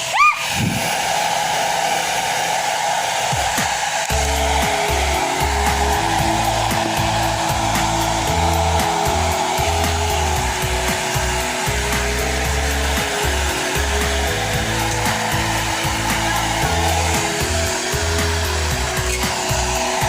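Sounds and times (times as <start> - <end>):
hair dryer blowing: 0.0 - 20.0
rock music: 4.1 - 20.0.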